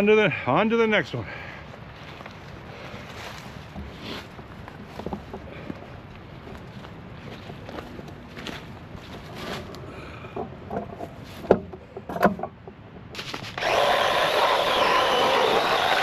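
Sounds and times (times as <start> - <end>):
electric chainsaw running: 13.2 - 16.0.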